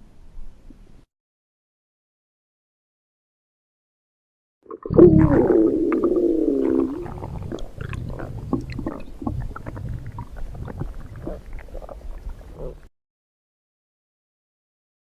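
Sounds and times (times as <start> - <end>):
stomach growling: 4.6 - 12.9.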